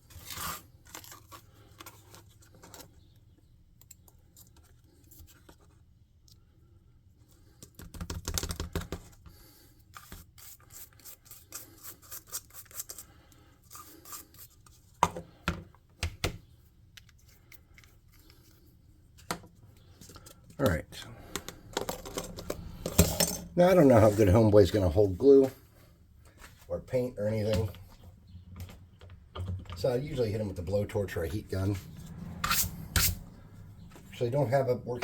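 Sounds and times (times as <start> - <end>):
rustling scratch: 31.1 - 34.2.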